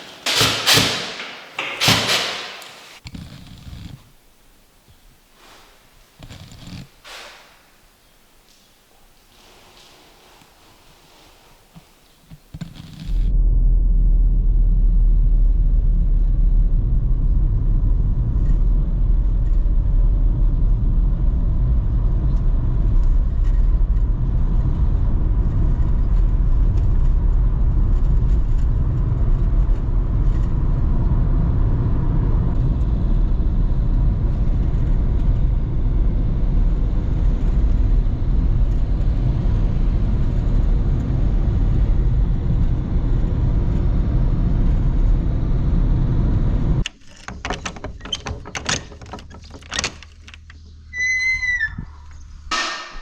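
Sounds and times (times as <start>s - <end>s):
loud low rumble: 13.1s - 46.8s.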